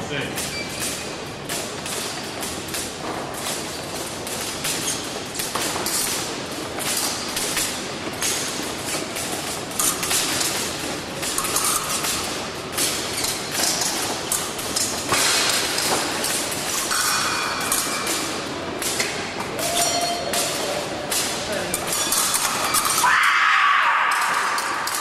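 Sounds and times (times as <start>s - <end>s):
hall hubbub: 17.6s - 25.0s.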